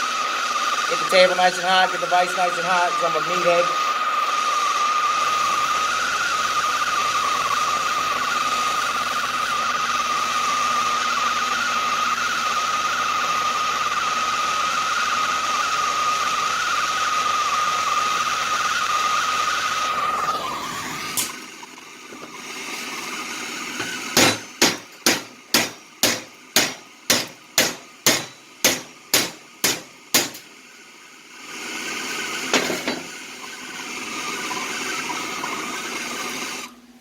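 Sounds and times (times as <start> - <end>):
propane torch hissing: 0.0 - 37.0
hammer striking metal: 23.8 - 30.5, 32.5 - 33.2.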